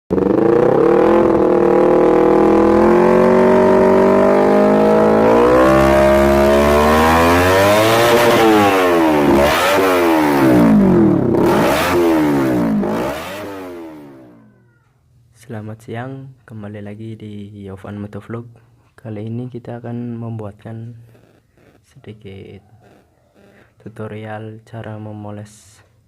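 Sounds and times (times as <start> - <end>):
motorcycle engine revving: 0.1 - 14.6, 21.0 - 22.0.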